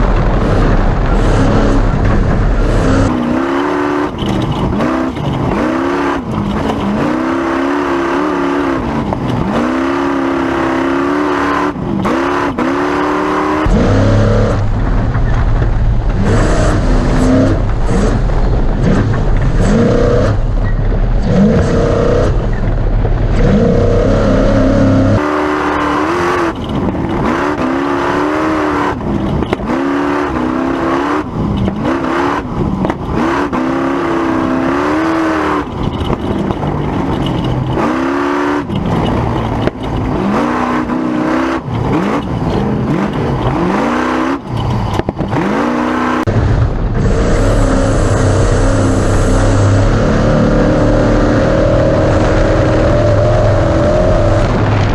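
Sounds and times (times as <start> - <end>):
low engine drone: 0.0 - 54.9
race truck engine revving: 0.0 - 54.9.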